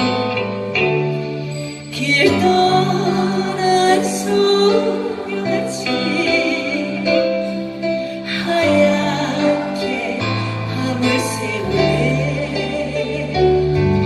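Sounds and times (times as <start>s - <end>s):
slow song with held bass: 0.0s - 14.0s.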